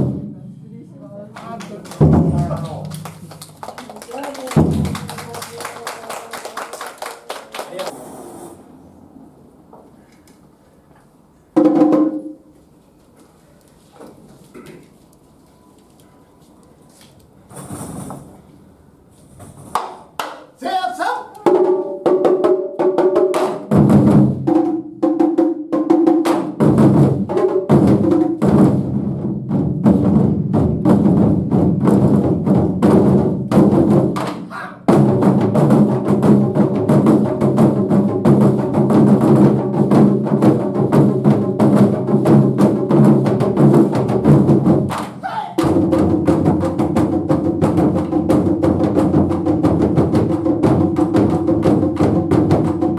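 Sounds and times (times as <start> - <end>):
drum ensemble playing: 0.0 - 7.9, 11.6 - 12.4, 19.7 - 52.9.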